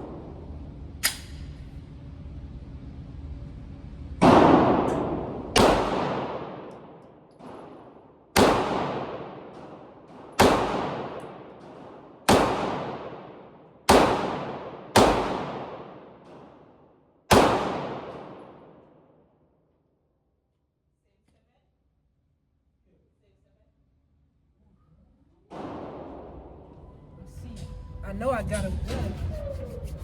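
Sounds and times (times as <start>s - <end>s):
faint gunshot: 4.2s - 16.7s, 17.3s - 18.8s, 25.5s - 26.6s
gunshots with ringing echo: 4.2s - 19.1s, 25.5s - 26.8s.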